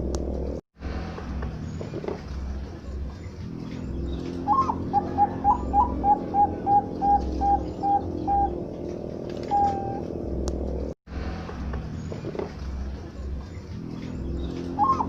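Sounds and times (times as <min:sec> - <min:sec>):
dove cooing: 0:04.4 - 0:10.1, 0:14.8 - 0:15.0.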